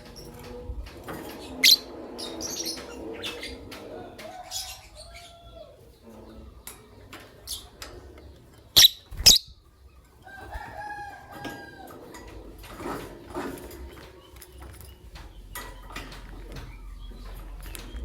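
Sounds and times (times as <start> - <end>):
lovebirds chirping: 7.4 - 10.1.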